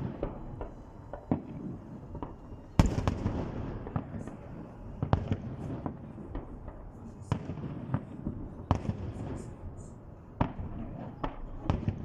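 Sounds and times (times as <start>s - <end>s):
fireworks bangs with echo: 0.0s - 12.0s.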